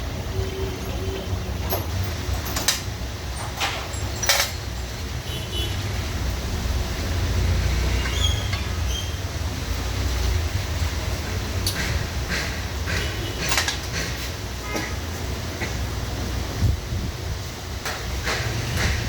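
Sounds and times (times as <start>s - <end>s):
sharp knocks or clatters: 17.8s - 19.0s.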